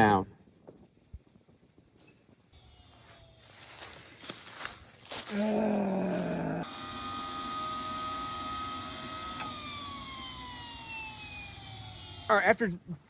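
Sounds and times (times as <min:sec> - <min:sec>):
small jet engine whine: 0:06.6 - 0:12.3.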